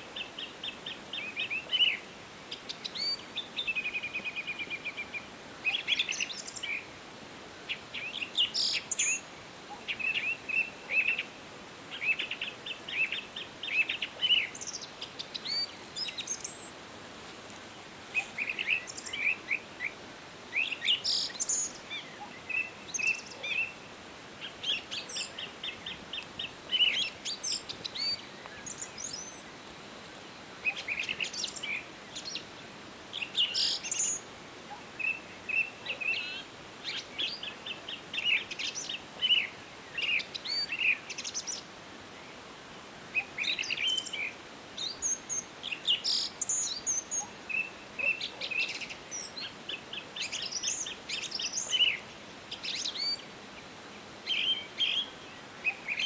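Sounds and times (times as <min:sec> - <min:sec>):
faint background hiss: 0:00.0 - 0:56.0
songbirds singing: 0:00.0 - 0:56.0.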